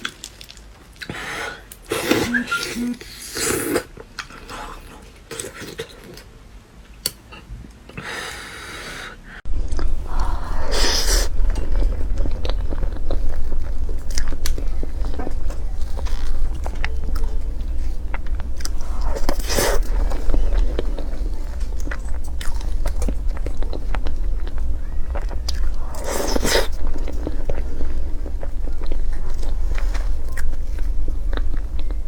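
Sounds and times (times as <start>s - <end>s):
chewing and crunching: 0.0s - 2.1s, 9.7s - 32.0s
steady low hum: 3.9s - 32.0s.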